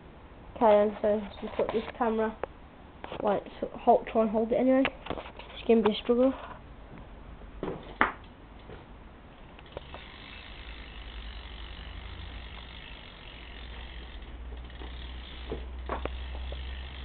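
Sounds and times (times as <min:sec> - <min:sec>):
bike hub freewheel clicking: 0:09.6 - 0:17.0
sharp knocks from handling bike: 0:14.8 - 0:16.6.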